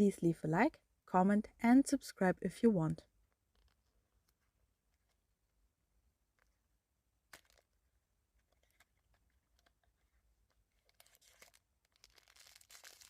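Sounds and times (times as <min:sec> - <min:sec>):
packaging rustling: 0:07.3 - 0:07.8, 0:08.4 - 0:13.0.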